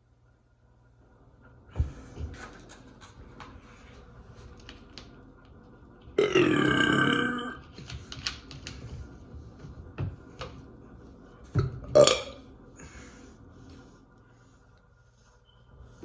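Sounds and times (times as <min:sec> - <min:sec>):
woman burping: 0:06.2 - 0:07.6, 0:12.0 - 0:12.4
small clicks and rustles: 0:07.7 - 0:09.7.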